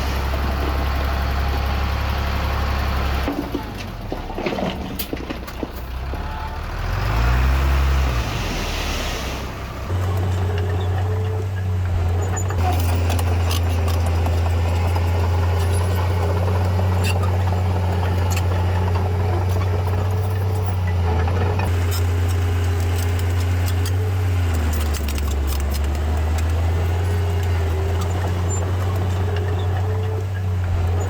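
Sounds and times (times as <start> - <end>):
heavy machinery diesel engine: 0.0 - 31.0
sharp clanks and knocks: 3.2 - 6.2, 12.1 - 31.0.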